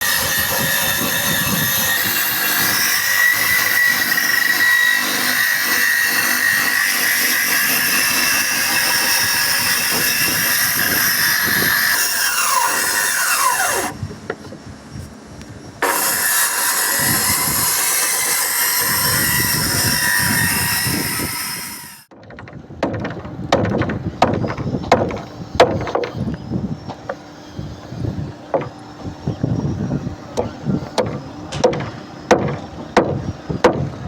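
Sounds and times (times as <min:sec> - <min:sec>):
power tool whining on wood: 0:00.0 - 0:22.1, 0:24.3 - 0:34.0
knocks and taps on timber: 0:30.4 - 0:33.9.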